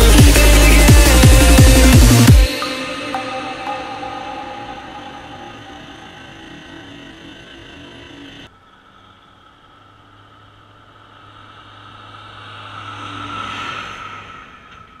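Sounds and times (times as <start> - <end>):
farm machine engine passing: 4.0 - 15.0.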